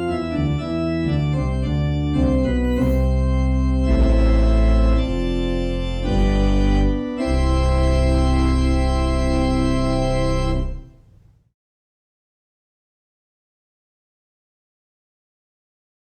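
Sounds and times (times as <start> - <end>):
organ playing sustained chords: 0.0 - 11.1.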